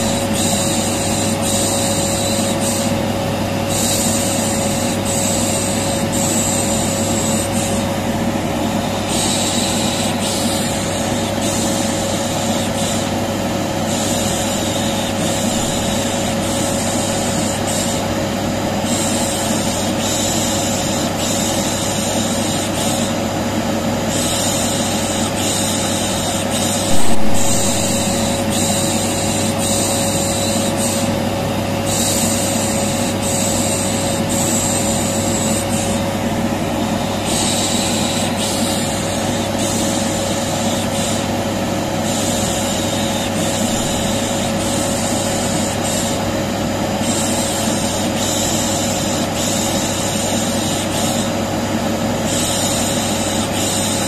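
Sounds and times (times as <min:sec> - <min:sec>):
vacuum cleaner running: 0:00.0 - 0:54.0
loud bump: 0:26.9 - 0:29.1.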